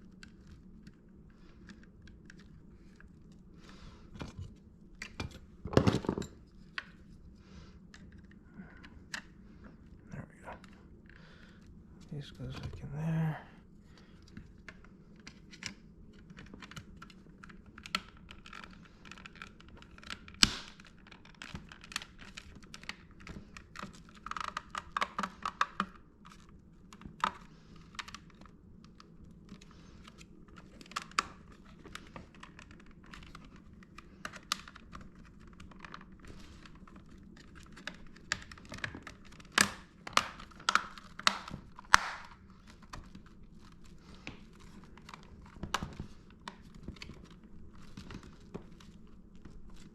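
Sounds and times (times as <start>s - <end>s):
plastic parts clicking and knocking: 4.1s - 7.0s, 14.2s - 49.9s.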